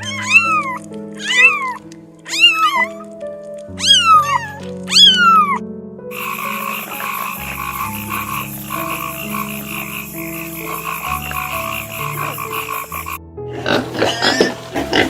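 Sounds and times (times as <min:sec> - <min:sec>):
frogs croaking: 0:06.1 - 0:15.0.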